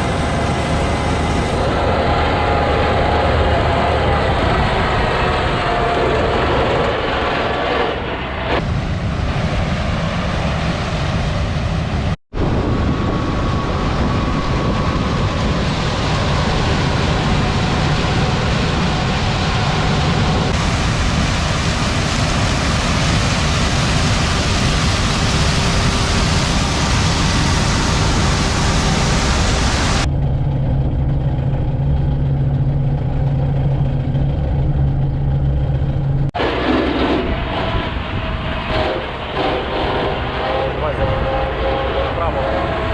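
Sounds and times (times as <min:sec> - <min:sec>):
heavy farm machinery running: 0:00.0 - 0:42.9
low engine hum: 0:00.0 - 0:42.9.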